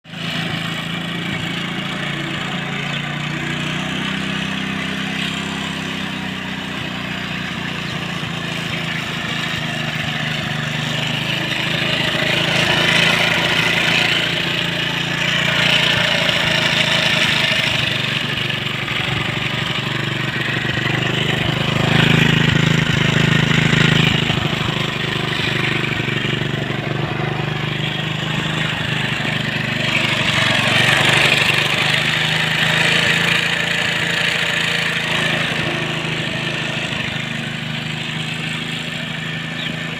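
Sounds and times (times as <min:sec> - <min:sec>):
moped engine revving: 0:00.0 - 0:39.9.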